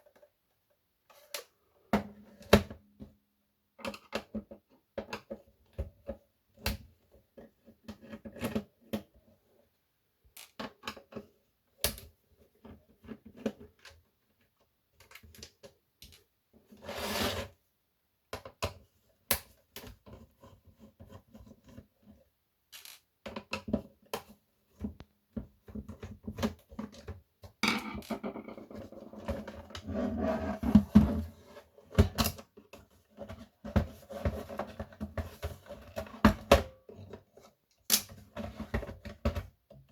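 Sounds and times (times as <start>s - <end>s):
scraping and rubbing: 28.5s - 31.7s.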